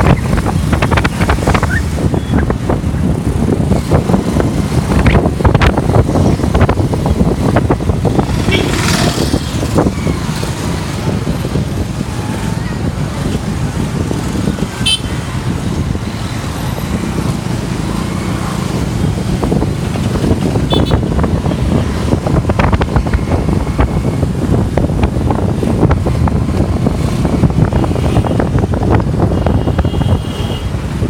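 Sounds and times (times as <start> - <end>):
heavy engines rumbling: 0.0 - 31.0.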